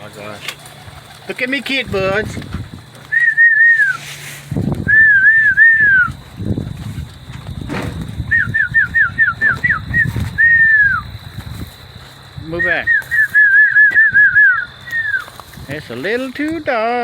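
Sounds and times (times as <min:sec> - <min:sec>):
person whistling: 0:03.1 - 0:04.0, 0:04.8 - 0:06.2, 0:08.3 - 0:11.0, 0:12.6 - 0:15.3.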